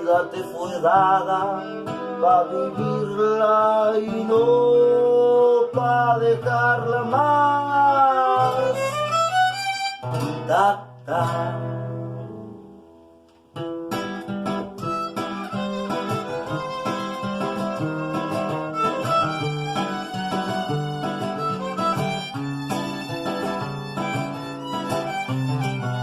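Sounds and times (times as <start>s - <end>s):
violin playing: 0.0s - 3.9s, 8.2s - 10.4s, 14.8s - 26.0s
plucked acoustic guitar: 0.0s - 26.0s.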